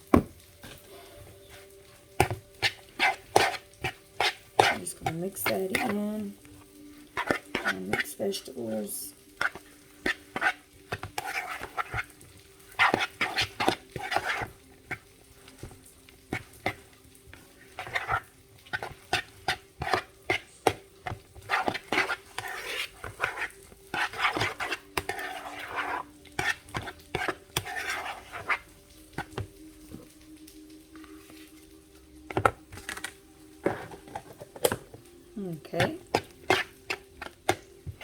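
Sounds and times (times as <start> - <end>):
light sizzling: 0.0 - 38.0
spoon scraping a pan: 0.6 - 30.1, 31.0 - 38.0.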